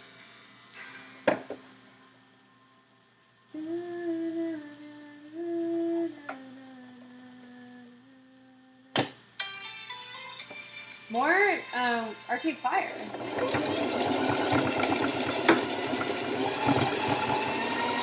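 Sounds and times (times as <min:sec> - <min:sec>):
person humming: 0:03.5 - 0:08.9.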